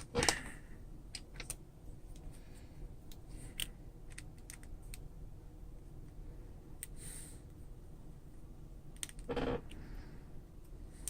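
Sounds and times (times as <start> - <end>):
small tools clicking on phone parts: 3.1 - 5.1.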